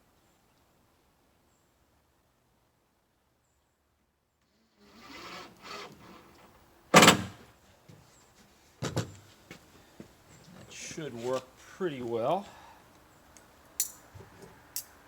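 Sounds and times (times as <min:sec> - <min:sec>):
wooden boards rubbing and creaking: 0:04.8 - 0:07.5.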